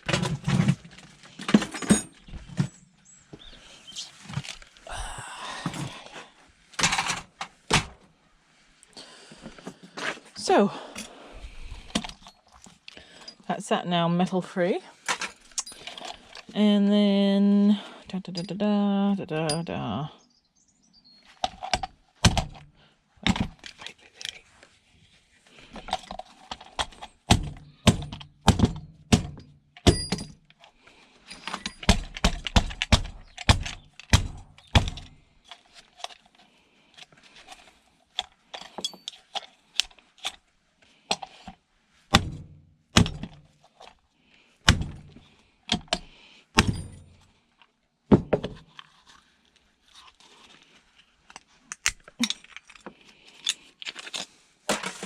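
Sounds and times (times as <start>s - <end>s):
parts and tools knocking and clunking: 0.0s - 2.8s, 6.8s - 8.0s, 11.8s - 13.4s, 21.4s - 24.4s, 25.7s - 36.3s, 38.1s - 40.4s, 41.1s - 44.0s, 44.6s - 47.3s, 48.1s - 48.9s, 51.3s - 55.0s
metal pieces clinking: 51.7s - 52.8s.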